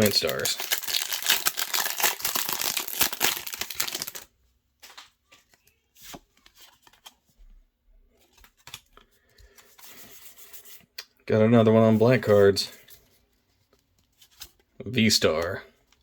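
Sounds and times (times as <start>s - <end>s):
cards being handled: 0.0s - 4.2s, 4.8s - 7.2s, 8.2s - 10.8s
foil wrapper tearing and crinkling: 0.0s - 4.3s.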